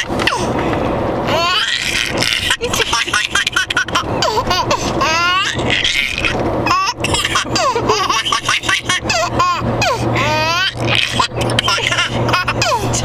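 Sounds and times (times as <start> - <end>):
young child laughing: 1.4 - 6.3, 10.6 - 13.0.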